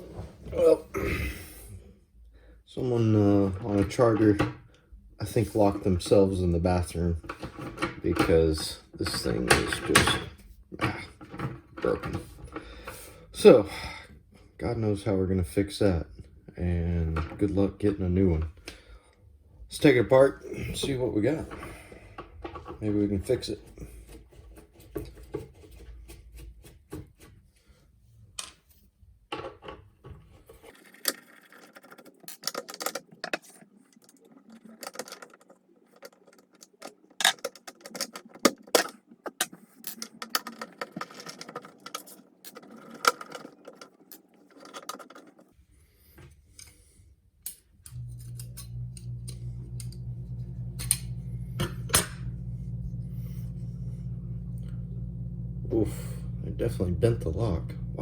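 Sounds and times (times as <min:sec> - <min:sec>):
door lock parts clicking: 0:30.8 - 0:45.5
low machine hum: 0:47.8 - 0:58.0.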